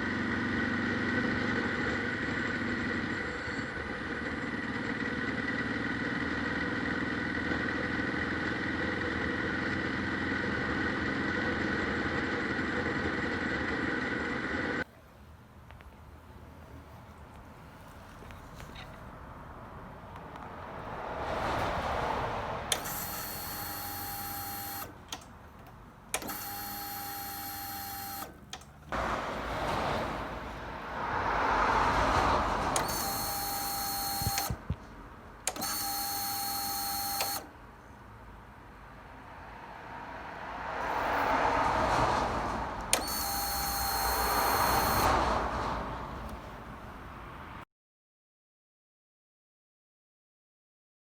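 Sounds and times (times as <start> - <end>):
small electric motor whining: 22.7 - 25.2, 26.1 - 28.4, 32.8 - 34.6, 35.5 - 37.5, 42.9 - 45.1.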